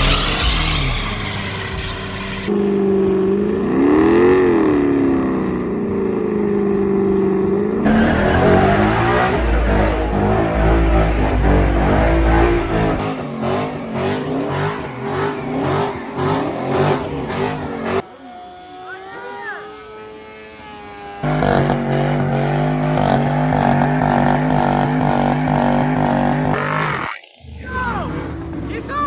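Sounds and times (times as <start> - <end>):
squeals: 0.0 - 2.5
loud steady engine drone: 0.0 - 26.6
car engines revving: 0.0 - 29.0.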